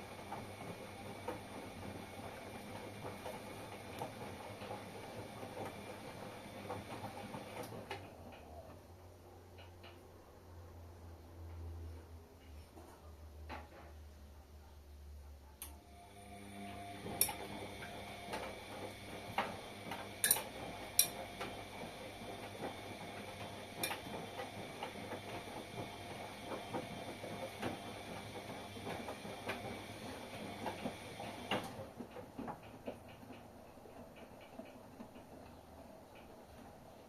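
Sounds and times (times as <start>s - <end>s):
washing machine motor hum: 0.0s - 9.6s, 15.6s - 37.0s.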